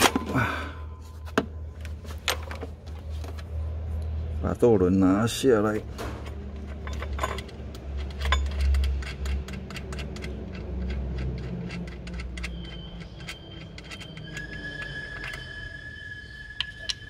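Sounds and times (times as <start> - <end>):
metal tools clinking: 6.0 - 15.7.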